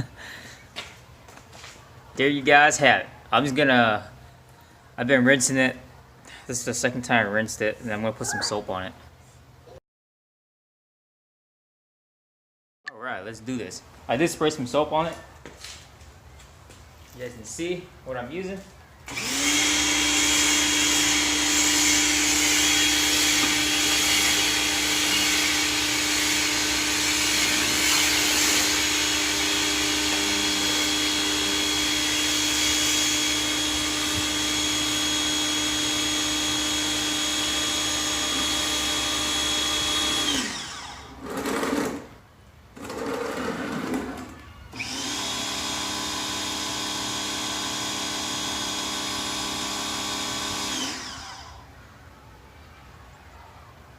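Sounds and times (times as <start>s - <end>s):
pressure washer motor hum: 19.1s - 42.0s, 44.8s - 51.6s.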